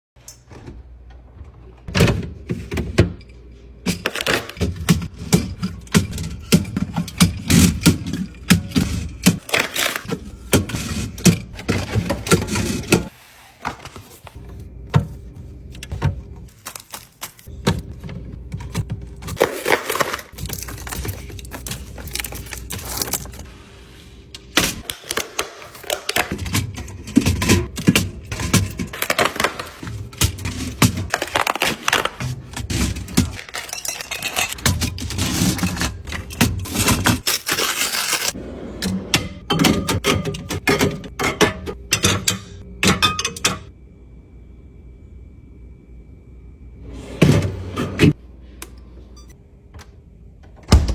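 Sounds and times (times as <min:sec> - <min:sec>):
packaging rustling: 0:16.5 - 0:17.5, 0:18.8 - 0:23.5.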